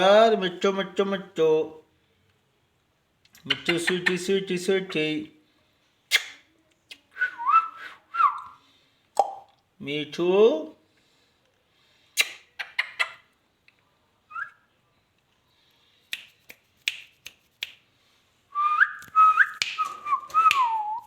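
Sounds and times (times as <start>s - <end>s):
parrot clicks and chirps: 3.3s - 4.3s, 12.2s - 13.3s.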